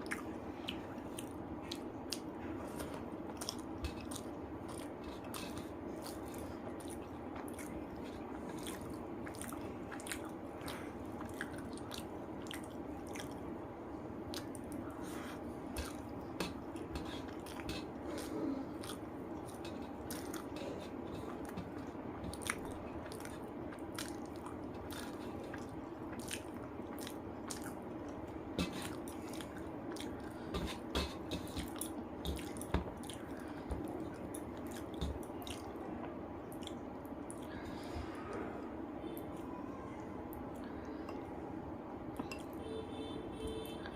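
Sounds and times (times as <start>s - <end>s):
chewing and biting food: 0.0s - 13.6s, 14.2s - 35.8s
low background hum: 0.0s - 43.9s.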